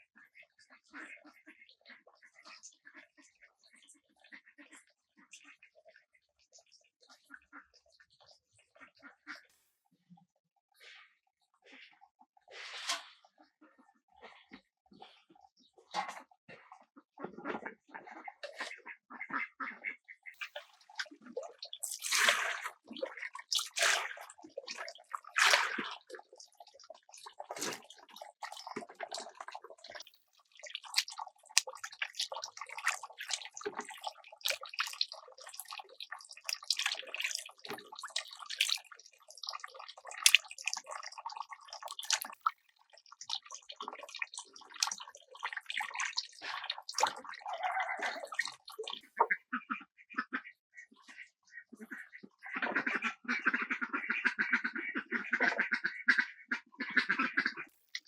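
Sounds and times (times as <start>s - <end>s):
water splashing and sloshing: 19.7s - 49.4s, 57.7s - 58.0s.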